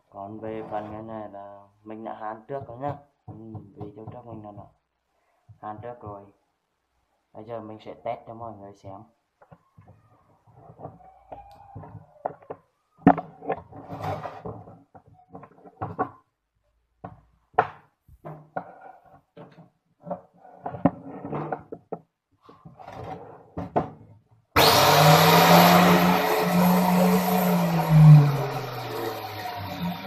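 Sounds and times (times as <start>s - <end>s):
tile cutter motor whining: 24.6s - 30.0s.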